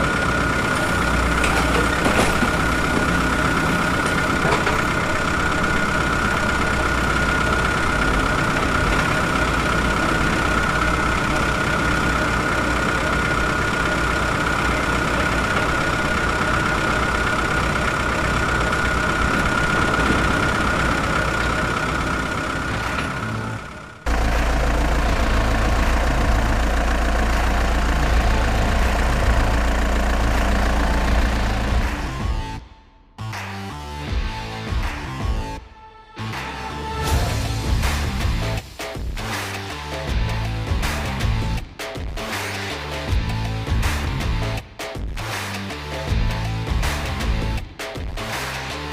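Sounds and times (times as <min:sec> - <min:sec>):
steady whine: 0:00.0 - 0:32.6
engine running steadily: 0:00.0 - 0:32.7, 0:37.0 - 0:41.6, 0:42.2 - 0:44.6, 0:45.2 - 0:48.9.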